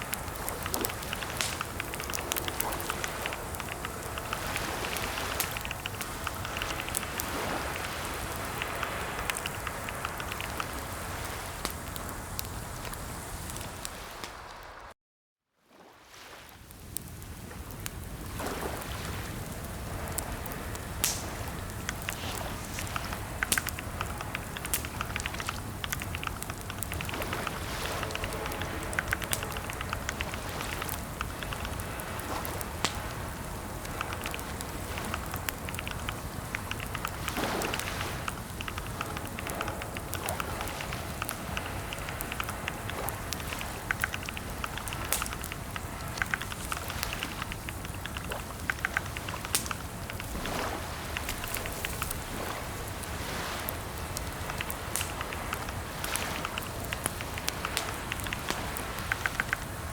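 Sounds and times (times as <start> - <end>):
steady low hiss: 0.0 - 14.9, 16.7 - 59.9
computer keyboard typing: 0.1 - 10.9, 21.8 - 33.1, 33.8 - 52.2, 54.0 - 59.7.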